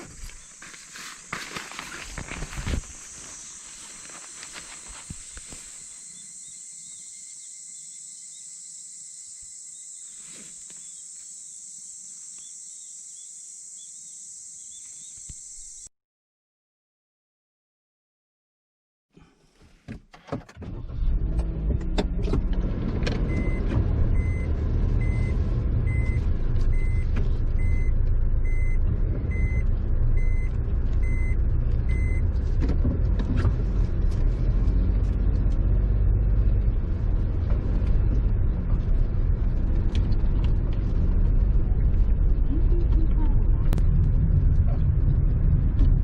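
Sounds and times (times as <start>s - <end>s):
car cabin rumble: 0.0s - 6.7s, 37.0s - 46.0s
short electronic beeps: 23.3s - 23.6s, 24.2s - 29.6s, 30.2s - 32.2s.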